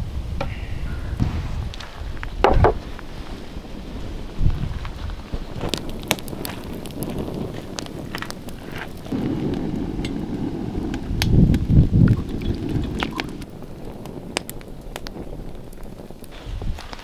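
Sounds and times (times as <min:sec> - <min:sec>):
wood fire crackling: 0:00.0 - 0:17.0
sharp pops: 0:05.3 - 0:13.5.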